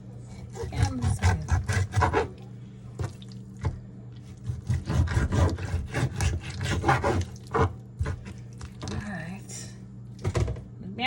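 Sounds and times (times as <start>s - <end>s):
knife sawing through raw chicken: 0.2s - 2.4s, 4.3s - 8.3s.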